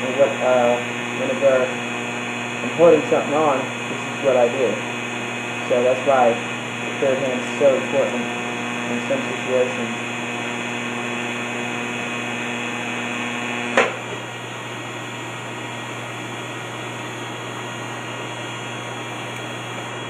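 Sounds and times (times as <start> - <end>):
welding arc buzzing: 0.0 - 20.0
welding machine hum: 0.0 - 20.0
sharp click: 13.7 - 14.0.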